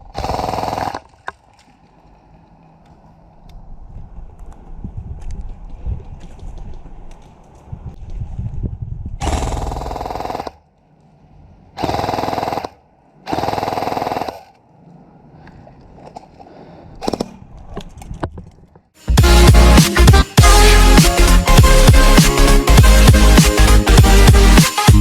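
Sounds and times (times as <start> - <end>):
airsoft gun firing bursts: 0.1 - 1.1, 9.2 - 10.6, 11.8 - 14.5.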